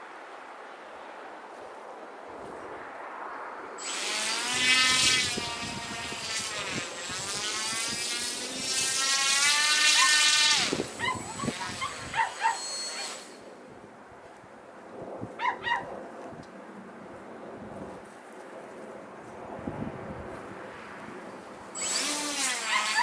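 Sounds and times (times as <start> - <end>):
small electric motor whining: 3.6 - 13.5, 21.2 - 23.0
short high yips: 11.0 - 13.2, 22.4 - 23.0.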